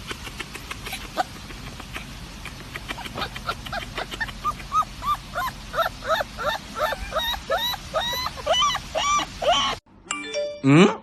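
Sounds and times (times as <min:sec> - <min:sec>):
small dog yapping: 0:02.9 - 0:09.8.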